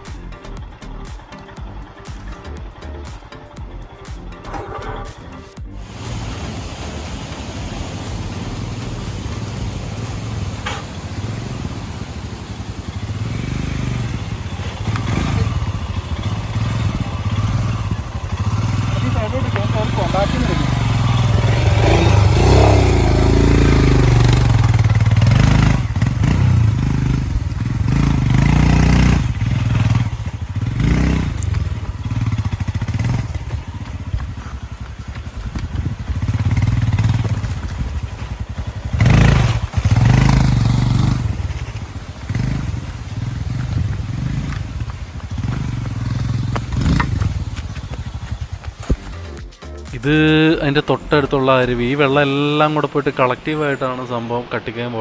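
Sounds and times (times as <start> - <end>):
motorcycle engine revving: 0.0 - 49.6
knocks and clatter on rocks: 30.3 - 38.8, 41.4 - 49.5.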